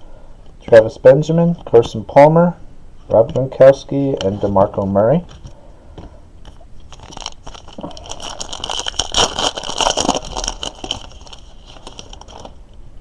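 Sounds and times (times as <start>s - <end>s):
card pack wrapper tearing and crinkling: 6.8s - 12.6s.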